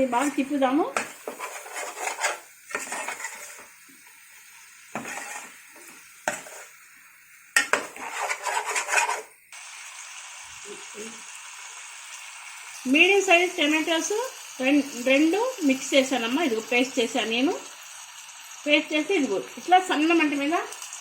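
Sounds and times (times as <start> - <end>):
spoon scraping in a pot: 0.0 - 6.9, 7.6 - 9.4
frying sizzle: 0.0 - 21.0.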